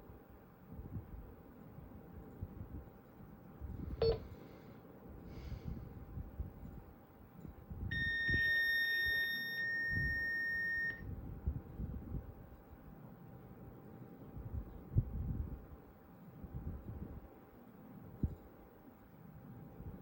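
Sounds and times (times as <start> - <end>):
high electronic beep tone: 7.9 - 11.0.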